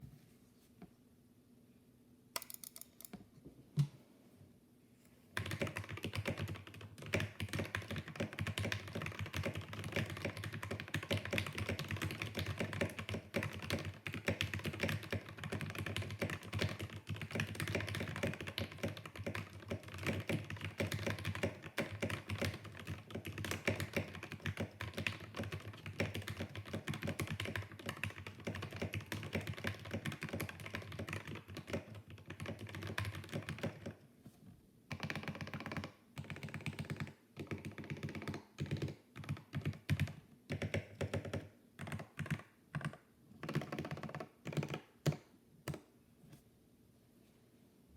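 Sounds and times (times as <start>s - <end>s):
mechanical keyboard typing: 2.4s - 3.2s, 5.4s - 34.0s, 34.9s - 45.8s.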